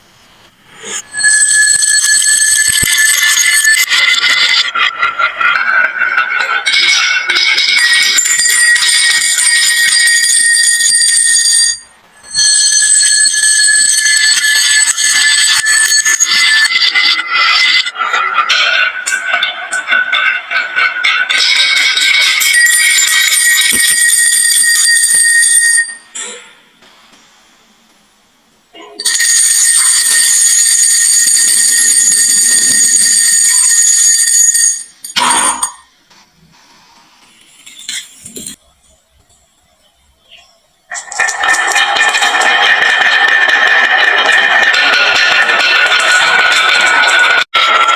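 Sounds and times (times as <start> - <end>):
glass marbles clattering down wooden run: 2.0 - 25.3, 40.9 - 47.9
marbles dropping clatter: 41.0 - 46.9
marbles rattling down wooden slope: 41.0 - 46.9.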